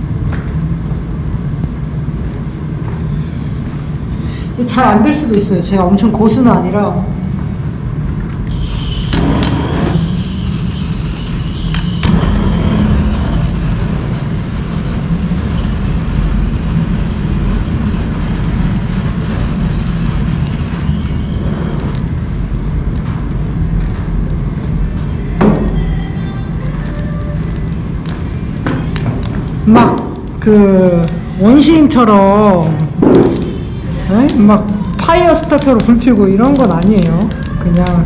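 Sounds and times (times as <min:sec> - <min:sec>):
torch flame rumbling and hissing: 0:00.0 - 0:38.0
sharp clicks and crackles: 0:08.2 - 0:31.3, 0:32.6 - 0:38.0.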